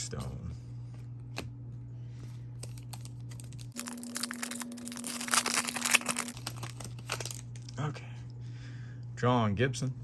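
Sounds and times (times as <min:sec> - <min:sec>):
low steady hum: 0:00.0 - 0:10.0
foil wrapper crinkling and tearing: 0:02.6 - 0:07.8.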